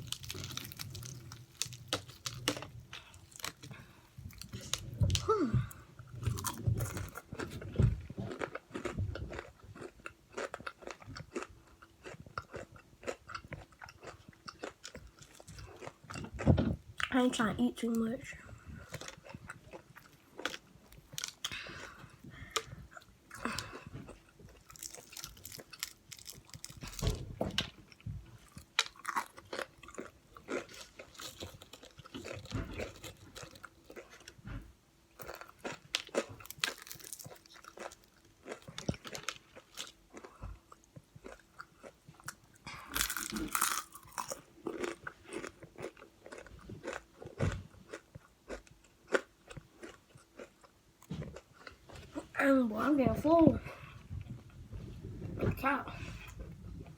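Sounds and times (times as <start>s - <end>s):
crunching fried chicken: 0.0s - 5.3s, 6.2s - 7.6s, 23.4s - 27.3s, 28.4s - 34.3s, 35.2s - 50.7s.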